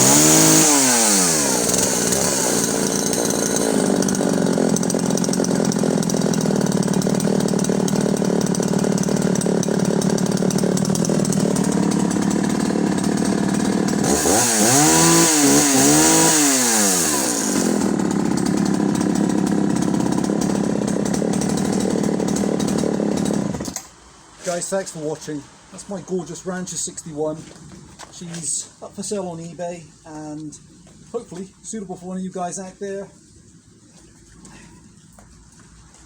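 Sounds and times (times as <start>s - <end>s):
chainsaw engine revving: 0.0s - 23.8s.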